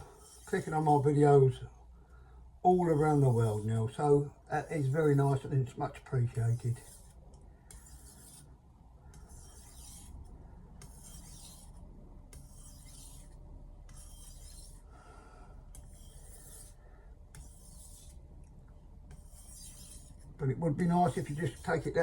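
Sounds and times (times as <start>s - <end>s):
knife rasping on whetstone: 0.0s - 0.8s, 2.9s - 3.9s, 6.4s - 8.5s, 9.1s - 14.9s, 15.7s - 18.2s, 19.1s - 22.0s.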